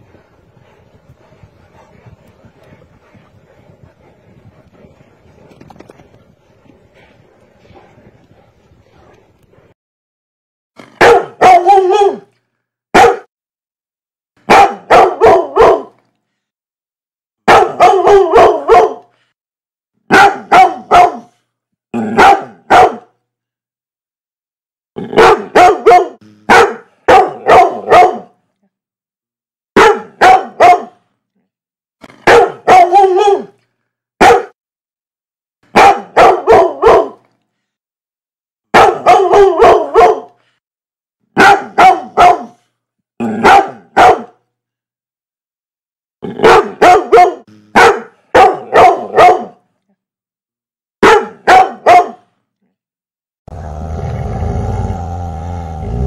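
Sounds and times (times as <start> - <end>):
dog barking loudly: 11.0 - 12.3, 12.9 - 13.3, 14.5 - 16.0, 17.5 - 19.1, 20.1 - 21.3, 22.2 - 23.1, 25.1 - 28.3, 29.8 - 31.0, 32.2 - 33.5, 34.2 - 34.6, 35.7 - 37.2, 38.7 - 40.4, 41.4 - 42.6, 43.4 - 44.4, 46.4 - 49.6, 51.0 - 52.3.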